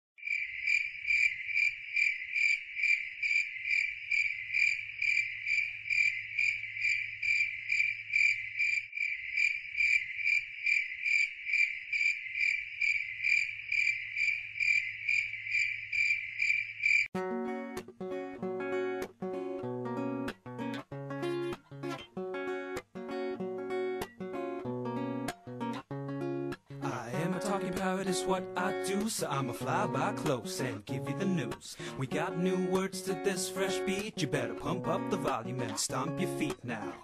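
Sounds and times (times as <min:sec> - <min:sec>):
cricket-like chirping: 0:00.2 - 0:17.1.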